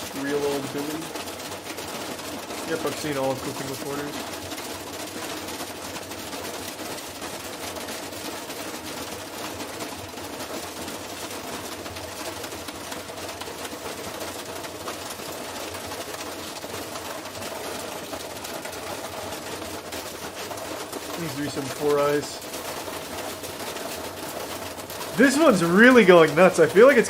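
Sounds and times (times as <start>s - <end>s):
washing machine motor whine: 20.9s - 25.6s.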